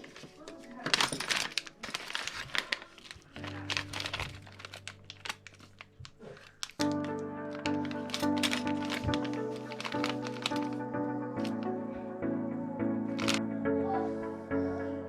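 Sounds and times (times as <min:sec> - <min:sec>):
packaging crinkling: 0:00.0 - 0:11.7, 0:13.2 - 0:13.4
background music: 0:00.0 - 0:15.0.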